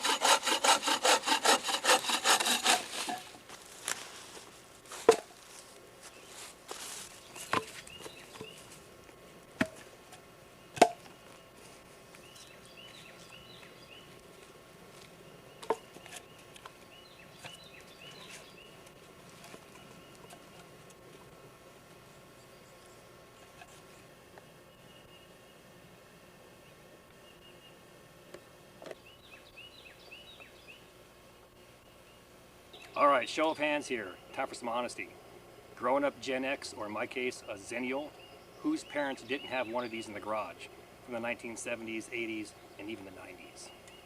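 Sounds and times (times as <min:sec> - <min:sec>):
hand saw cutting wood: 0:00.0 - 0:03.4.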